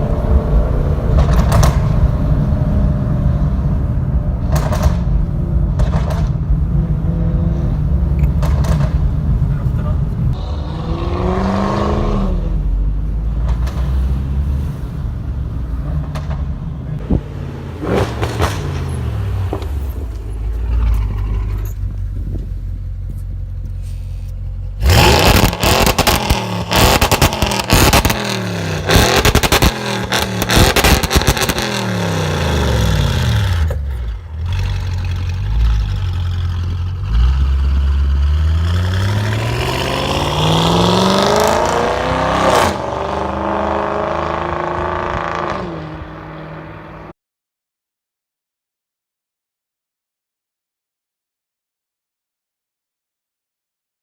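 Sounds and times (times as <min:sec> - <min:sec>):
car engine revving: 0:00.0 - 0:23.2, 0:24.7 - 0:47.1
exhaust crackles and pops: 0:01.1 - 0:02.2, 0:04.4 - 0:06.7, 0:08.1 - 0:09.9, 0:19.5 - 0:38.2.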